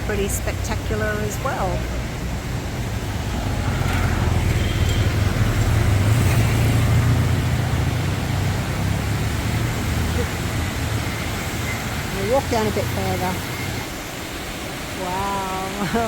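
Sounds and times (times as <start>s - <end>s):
vehicle passing by: 1.6s - 13.8s.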